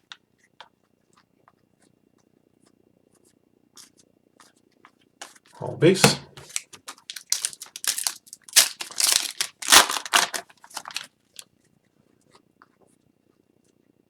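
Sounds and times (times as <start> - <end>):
foil wrappers crinkling: 6.4 - 11.5.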